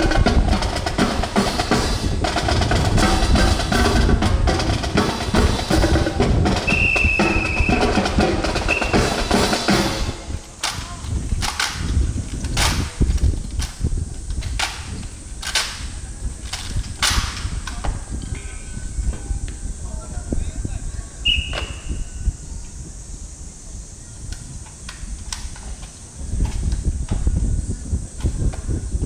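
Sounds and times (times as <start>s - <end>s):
marching drums playing cadence: 0.0s - 13.0s.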